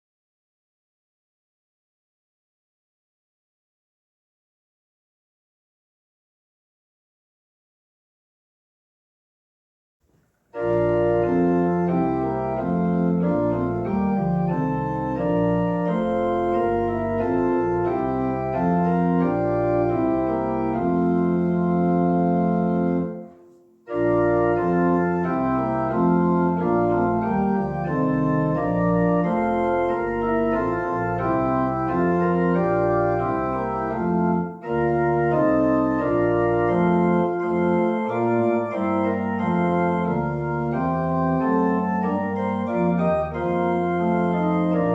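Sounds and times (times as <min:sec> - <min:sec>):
organ playing sustained chords: 0:10.5 - 0:44.9.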